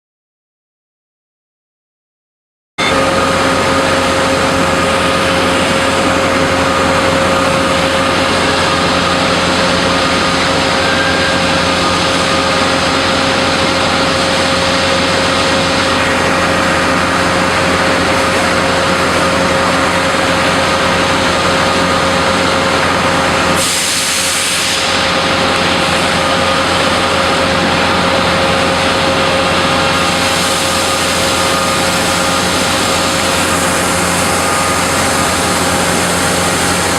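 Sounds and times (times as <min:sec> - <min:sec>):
factory machinery hum: 0:02.8 - 0:36.9
machinery whines: 0:02.8 - 0:36.9
burst of hiss: 0:23.6 - 0:24.8.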